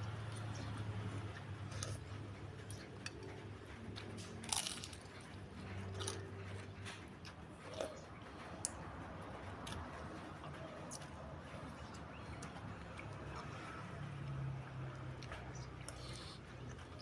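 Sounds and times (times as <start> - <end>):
chewing and biting: 0.0 - 17.0
low steady hum: 0.0 - 17.0
crunchy bites: 4.4 - 5.2.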